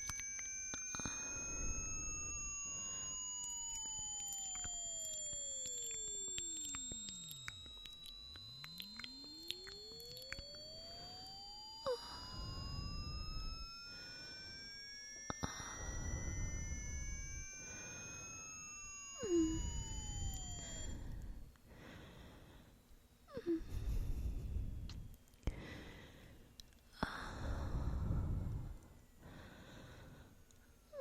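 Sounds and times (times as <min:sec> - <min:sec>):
whistle dropping in pitch: 0:00.0 - 0:21.2
test tones sliding in pitch: 0:00.0 - 0:21.4.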